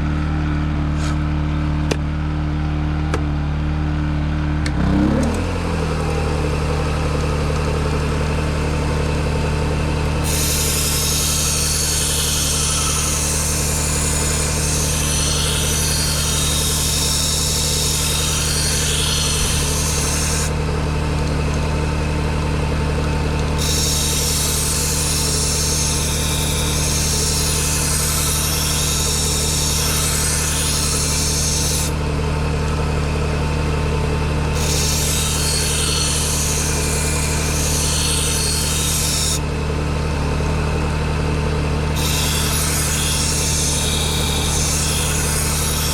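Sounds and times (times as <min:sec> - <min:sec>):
belt grinder running: 0:04.7 - 0:45.9
blade rasping on grinding belt: 0:10.2 - 0:33.6, 0:34.3 - 0:39.5, 0:41.9 - 0:45.9.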